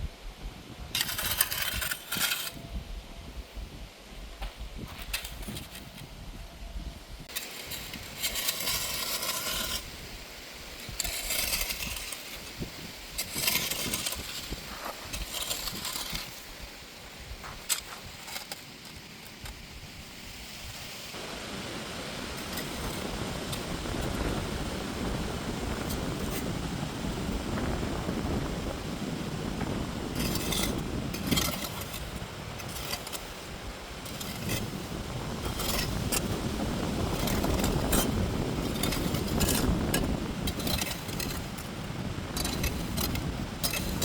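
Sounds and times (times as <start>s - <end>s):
steady rushing noise: 0.0s - 44.0s
scraping and clinking on gravel: 1.0s - 2.6s, 4.4s - 6.1s, 7.3s - 9.9s, 10.8s - 19.6s, 22.3s - 24.4s, 29.6s - 44.0s.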